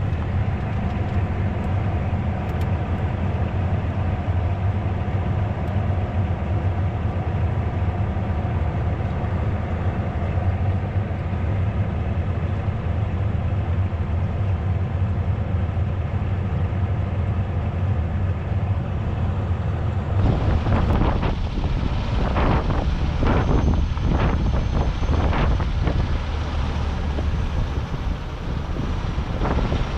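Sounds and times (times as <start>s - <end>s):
diesel engine droning: 0.0s - 29.9s
wind on microphone: 20.1s - 29.9s.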